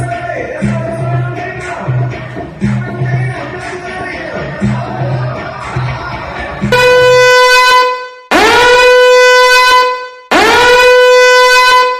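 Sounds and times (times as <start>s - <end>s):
buzzy horn blasts: 6.7s - 11.9s.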